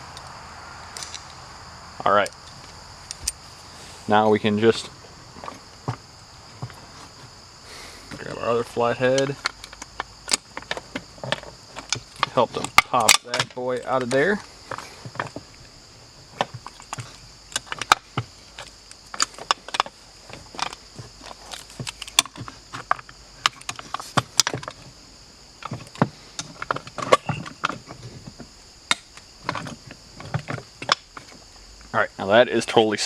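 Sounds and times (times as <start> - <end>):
loose parts rattling: 0.9 - 1.4, 2.0 - 7.3, 8.0 - 31.5.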